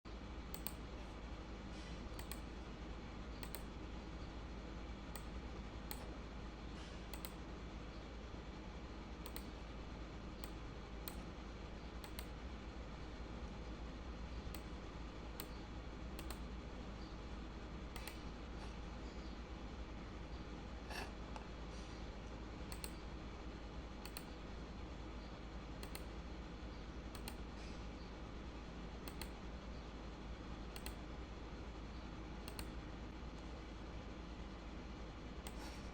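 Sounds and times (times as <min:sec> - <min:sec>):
low hum and hiss: 0:00.1 - 0:35.9
sharp clicks: 0:00.5 - 0:00.8, 0:02.2 - 0:02.5, 0:03.4 - 0:03.7, 0:05.1 - 0:05.3, 0:07.1 - 0:07.4, 0:09.2 - 0:09.5, 0:12.0 - 0:12.4, 0:16.2 - 0:16.4, 0:17.9 - 0:18.2, 0:22.7 - 0:23.0, 0:24.0 - 0:24.3, 0:25.8 - 0:26.1, 0:27.1 - 0:27.4, 0:29.0 - 0:29.4, 0:30.7 - 0:31.0, 0:32.4 - 0:32.7.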